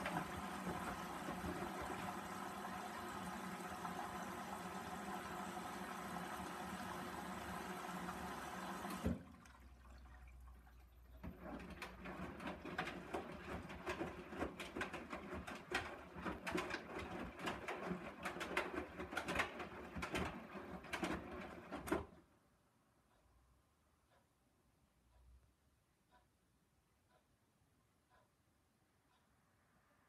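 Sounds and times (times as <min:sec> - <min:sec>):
water sloshing in drum: 0:00.0 - 0:21.9
washing machine hum: 0:00.0 - 0:22.3.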